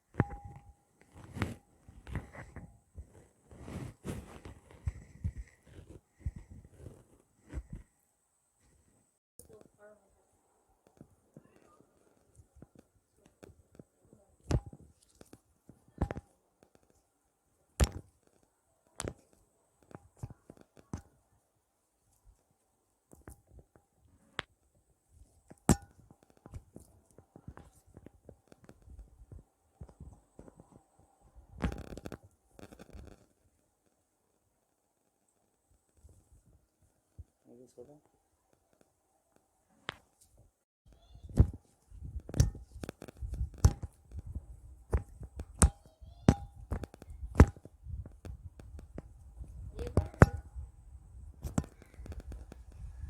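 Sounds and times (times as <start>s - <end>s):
hands tapping and rubbing body: 0.1s - 7.9s.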